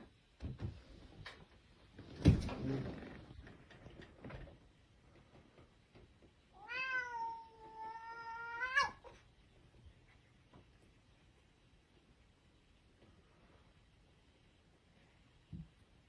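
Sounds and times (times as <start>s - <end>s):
cat meowing: 6.6s - 9.2s.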